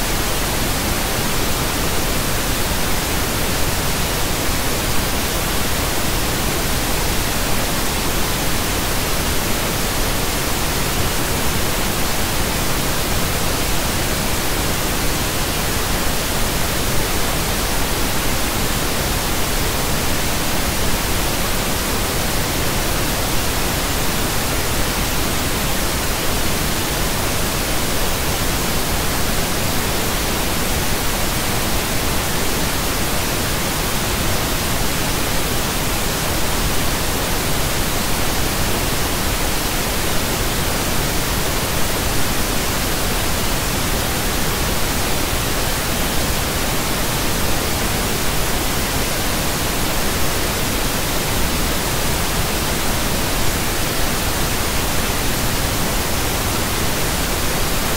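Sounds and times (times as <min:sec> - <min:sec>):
pink noise hiss: 0:00.0 - 0:57.9.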